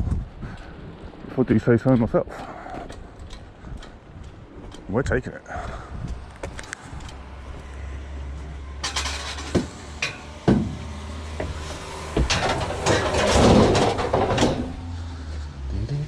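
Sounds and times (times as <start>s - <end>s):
metal clattering and scraping: 8.6s - 15.5s
scrap metal knocks and bangs: 8.7s - 15.2s.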